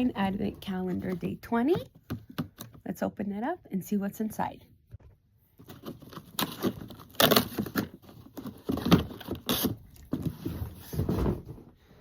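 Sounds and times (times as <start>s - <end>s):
cardboard tearing: 5.7s - 11.0s.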